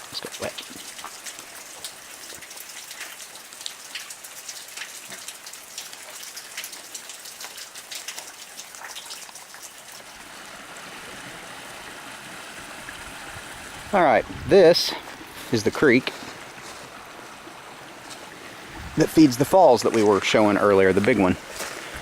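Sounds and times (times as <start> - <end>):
creek flowing: 0.0 - 22.0
running water: 0.0 - 22.0
water dripping and spattering: 0.0 - 22.0.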